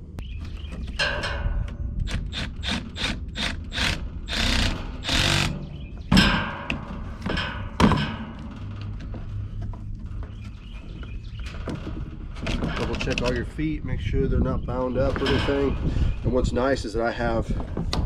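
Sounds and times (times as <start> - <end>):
sharp knocks: 4.3 - 9.0.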